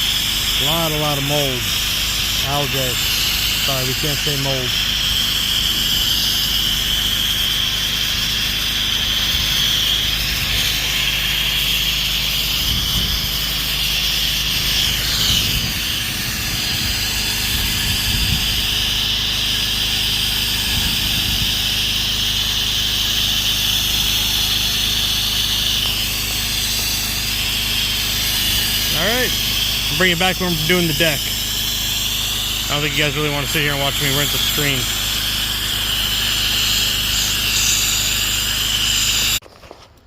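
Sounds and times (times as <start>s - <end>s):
high-pressure water spraying: 0.0s - 39.4s
pressure washer engine droning: 0.0s - 39.4s.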